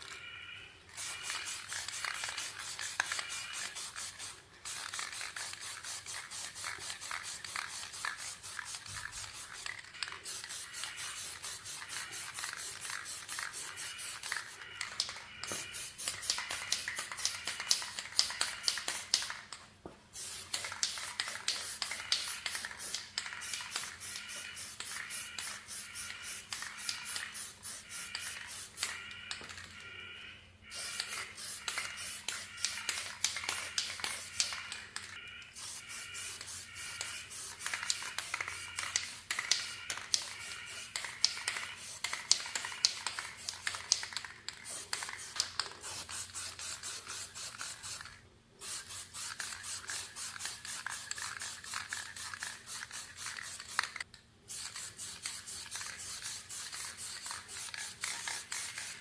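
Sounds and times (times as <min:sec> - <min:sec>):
sandpaper rubbing back and forth: 0:01.0 - 0:14.6.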